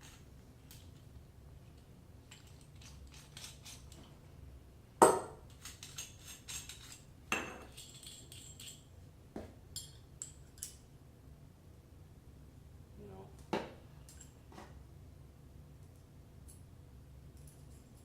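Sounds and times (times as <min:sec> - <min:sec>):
light clicks and clinks: 0:14.0 - 0:14.4, 0:17.3 - 0:18.0.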